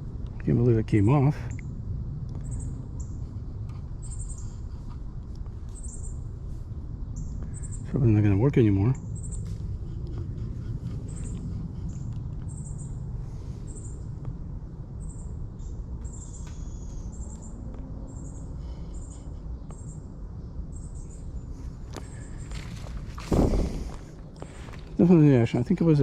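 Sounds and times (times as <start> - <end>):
steady low rumble: 0.0 - 26.0.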